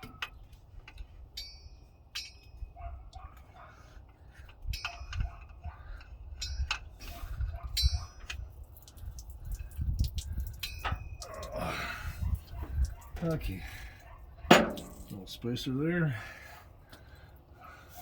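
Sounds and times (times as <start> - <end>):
metal parts clinking and knocking: 14.5 - 15.3.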